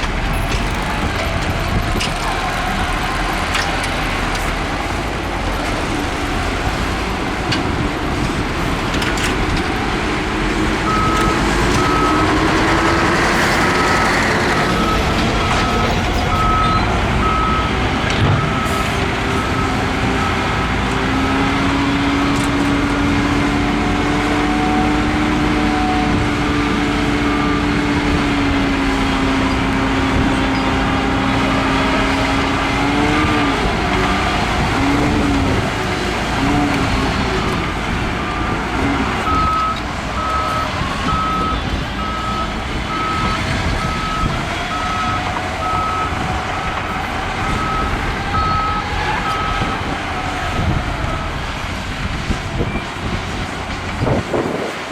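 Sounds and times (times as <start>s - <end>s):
engine working under load: 0.0s - 54.9s
heavy diesel machinery engines: 0.0s - 54.9s
reversing alarm beeping: 10.9s - 20.5s, 39.2s - 46.8s, 47.4s - 49.9s.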